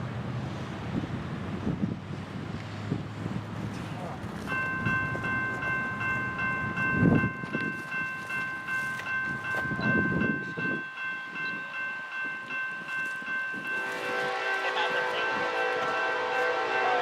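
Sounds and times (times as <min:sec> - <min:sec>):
freight train rumble: 0:00.0 - 0:17.0
high multi-tone ringing pulsing: 0:04.5 - 0:17.0.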